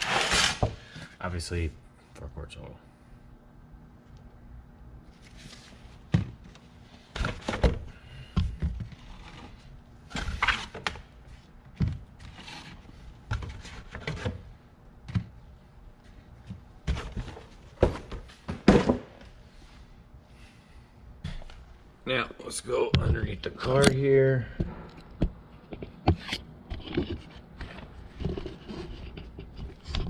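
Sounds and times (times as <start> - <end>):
objects thunking and knocking: 6.0 - 11.0, 16.4 - 19.3.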